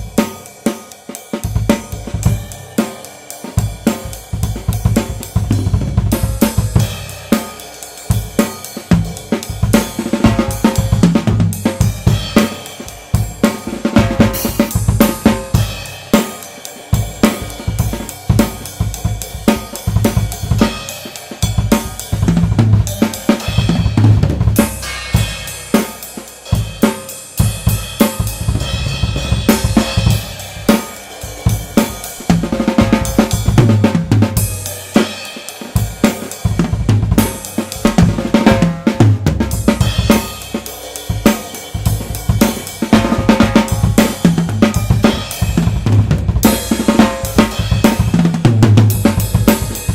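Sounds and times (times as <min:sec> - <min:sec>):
drum kit playing: 0:00.0 - 0:49.9.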